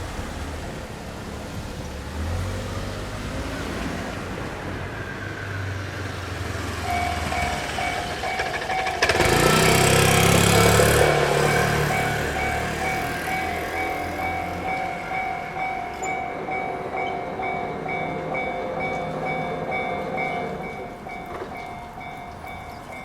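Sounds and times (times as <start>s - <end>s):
low traffic rumble: 0.0s - 23.0s
level-crossing warning bell dinging: 4.8s - 23.0s.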